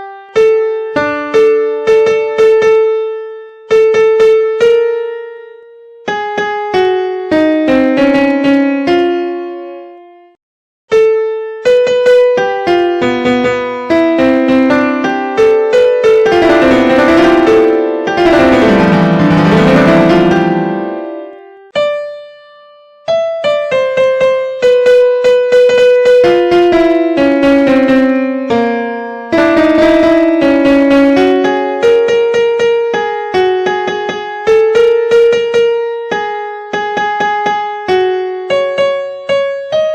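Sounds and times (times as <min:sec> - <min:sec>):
banjo ringtone melody: 0:16.0 - 0:21.3.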